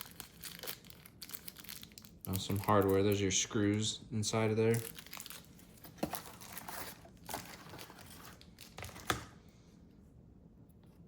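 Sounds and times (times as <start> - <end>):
plastic packaging crinkling: 0.0 - 3.6, 4.6 - 9.3.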